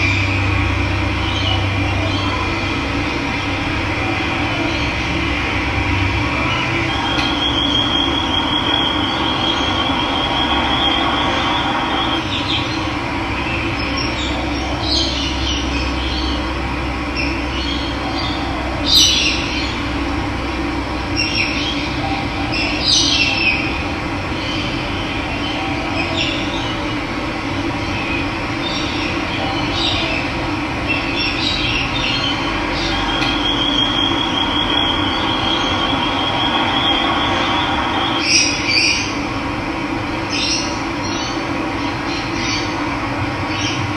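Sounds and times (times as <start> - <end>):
water rushing: 0.0 - 13.4, 32.5 - 39.7
birds calling: 0.0 - 20.1, 21.0 - 39.3.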